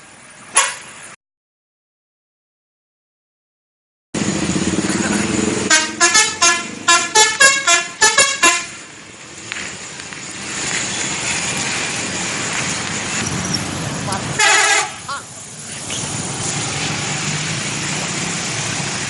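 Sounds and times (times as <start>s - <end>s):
bus engine and road noise: 0.0s - 1.2s, 4.2s - 19.0s
traffic noise: 0.0s - 1.2s, 4.2s - 19.0s
bus musical horn: 4.7s - 8.9s, 14.2s - 15.2s.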